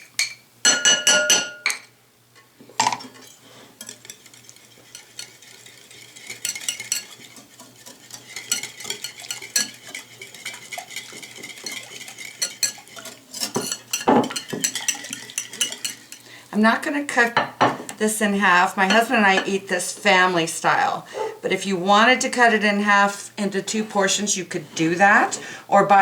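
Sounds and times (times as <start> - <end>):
whisk clicking in a bowl: 2.9 - 16.3.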